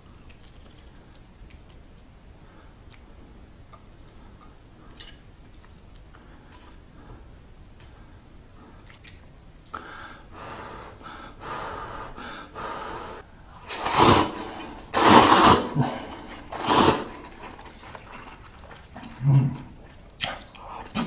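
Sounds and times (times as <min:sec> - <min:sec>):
soft eating sounds: 0:00.0 - 0:21.0
noodles slurped loudly: 0:13.6 - 0:21.0.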